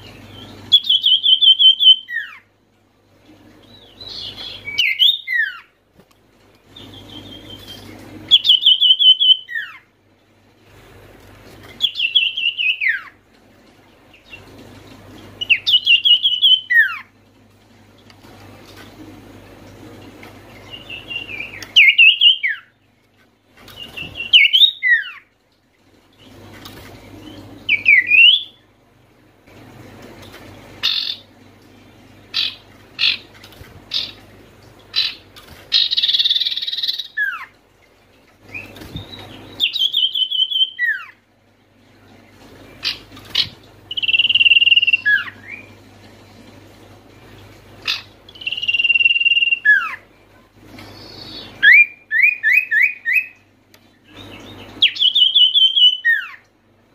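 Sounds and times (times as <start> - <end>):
bird whistling call: 4.5 - 5.7, 27.7 - 28.6, 38.5 - 41.2, 47.9 - 50.0, 50.9 - 53.4, 54.8 - 56.4.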